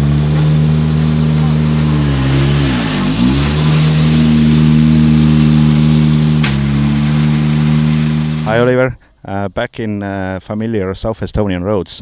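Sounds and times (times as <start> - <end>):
gear shift crack: 0.0 - 8.7
rally car engine at high revs: 0.0 - 8.7.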